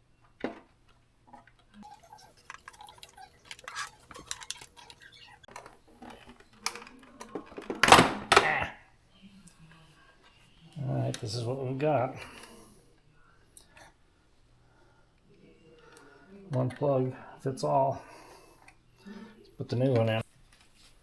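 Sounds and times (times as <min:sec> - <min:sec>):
plastic clatter: 0:01.9 - 0:05.7.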